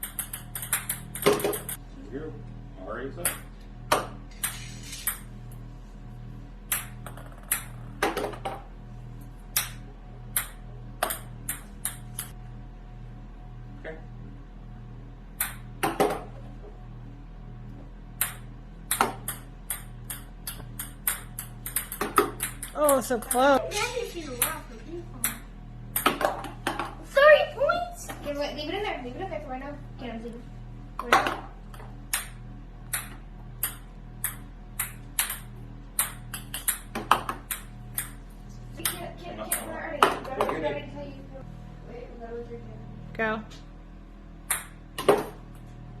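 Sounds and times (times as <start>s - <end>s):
ping pong balls bouncing: 0.0s - 1.8s, 6.7s - 8.6s, 9.6s - 12.4s, 18.2s - 23.8s, 25.2s - 26.9s, 31.0s - 38.2s, 38.8s - 40.6s, 44.5s - 45.4s.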